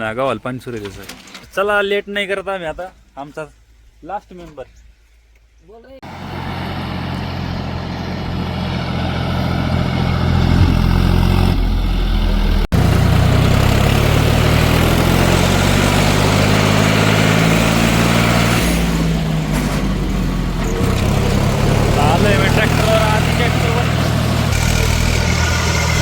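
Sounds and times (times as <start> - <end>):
tractor diesel engine running: 6.0 - 26.0.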